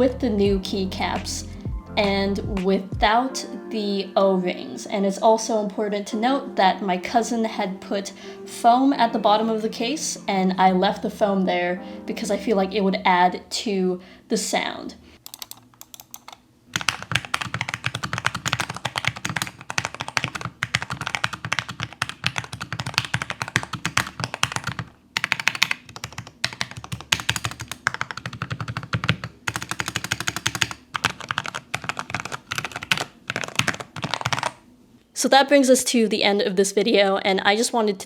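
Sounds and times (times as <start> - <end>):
mechanical keyboard typing: 15.2 - 34.6.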